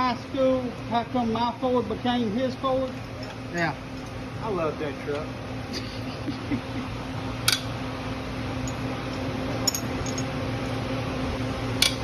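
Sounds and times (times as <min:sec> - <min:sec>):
steady machine hum: 0:00.0 - 0:12.0
metal parts clinking: 0:09.6 - 0:10.3.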